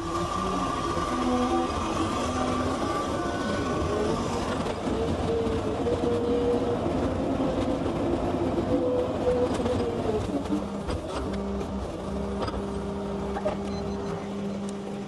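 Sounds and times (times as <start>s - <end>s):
heavy machinery engine rumble: 0.0s - 15.0s.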